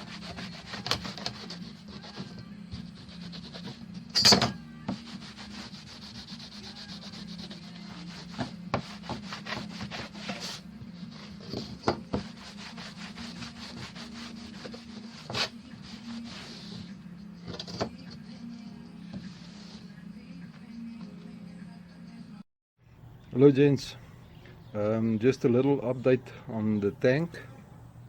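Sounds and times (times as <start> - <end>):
scraping and rubbing strokes: 4.9 - 17.0, 19.2 - 20.0.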